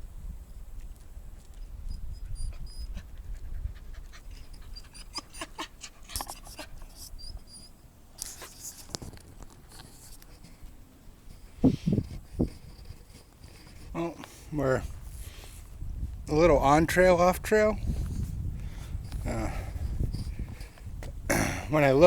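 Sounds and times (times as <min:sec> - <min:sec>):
faint bird chirps: 0:06.9 - 0:07.9.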